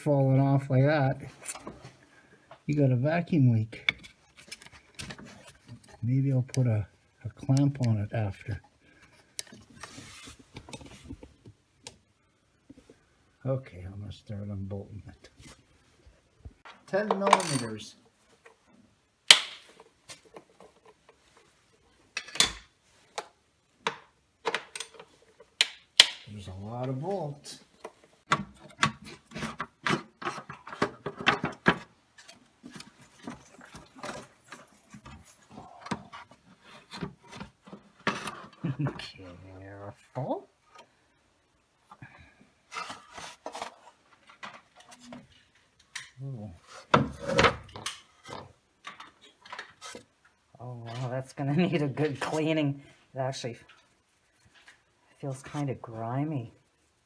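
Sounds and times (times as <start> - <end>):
metal knocks clunks and scraping: 27.8 - 39.1, 42.7 - 50.2.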